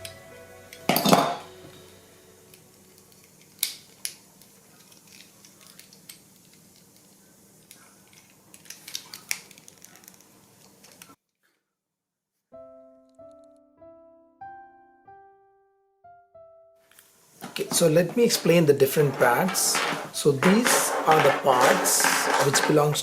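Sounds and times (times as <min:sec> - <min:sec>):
plastic pieces clattering and clicking: 0:03.0 - 0:07.1, 0:07.7 - 0:11.2, 0:17.4 - 0:23.0.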